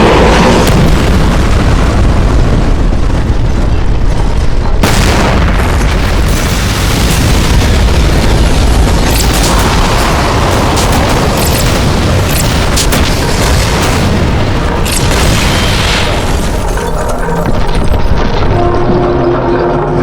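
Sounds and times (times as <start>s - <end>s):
explosion-like rumbling: 0.0s - 19.6s.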